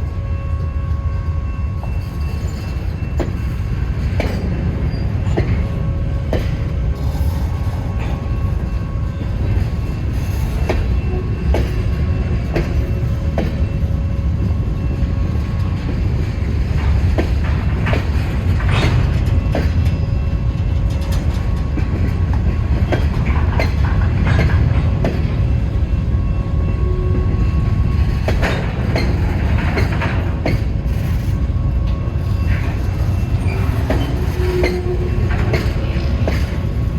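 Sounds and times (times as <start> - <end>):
wheels clicking over rail joints: 20.8 - 25.5.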